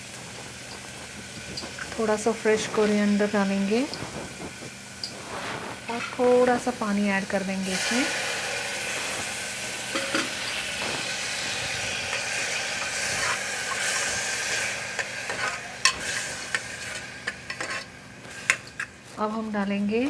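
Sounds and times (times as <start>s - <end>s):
spoon stirring: 0.0s - 8.2s, 8.8s - 20.0s
masala sizzling in a pot: 0.0s - 20.0s
spoon tapping against pot: 9.9s - 10.4s.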